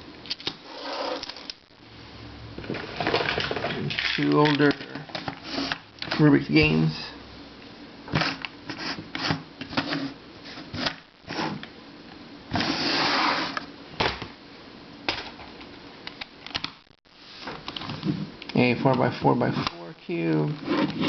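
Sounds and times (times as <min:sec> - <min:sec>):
box scraping on shelf: 0:00.6 - 0:01.2, 0:05.4 - 0:05.8, 0:12.5 - 0:13.6, 0:20.6 - 0:21.0.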